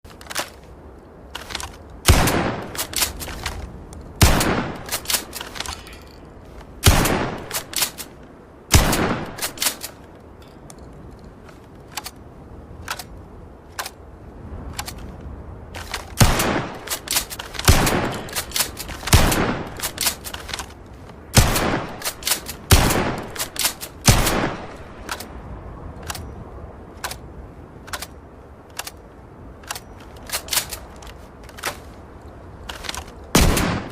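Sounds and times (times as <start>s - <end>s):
shotgun blasts: 1.4s - 3.5s, 4.2s - 5.4s, 6.8s - 8.0s, 8.7s - 9.8s, 16.2s - 20.2s, 21.4s - 25.1s, 33.4s - 33.9s.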